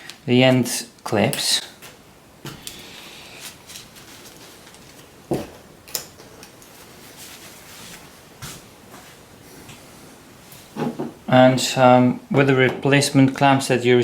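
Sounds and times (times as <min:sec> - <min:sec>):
faint steady hiss: 0:00.0 - 0:14.0.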